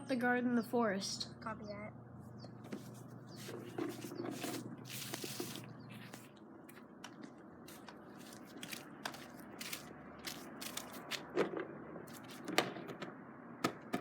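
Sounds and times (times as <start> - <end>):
crunching and crackling: 3.4 - 12.7.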